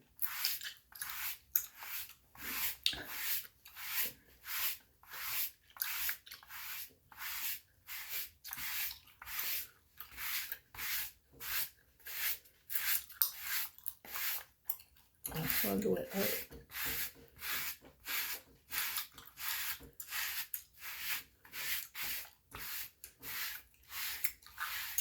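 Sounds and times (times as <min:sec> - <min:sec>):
brush bristles sweeping over skin: 0:00.2 - 0:14.5, 0:15.3 - 0:25.0.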